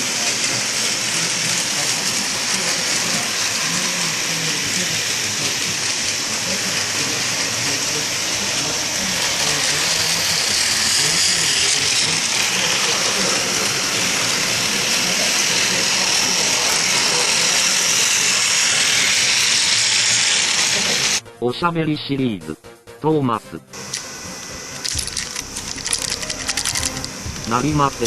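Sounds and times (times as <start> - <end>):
toy train motor whirring: 0.0 - 21.2, 23.8 - 28.0.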